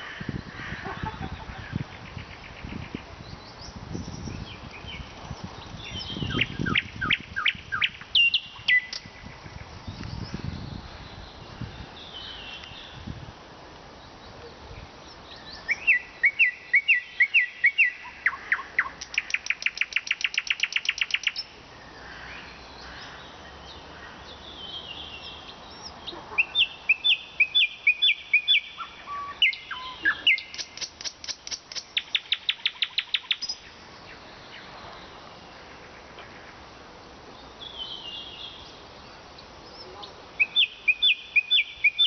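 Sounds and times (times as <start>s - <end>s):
nightingale singing: 0.0s - 13.2s, 13.9s - 21.9s, 22.5s - 36.6s, 37.3s - 42.0s.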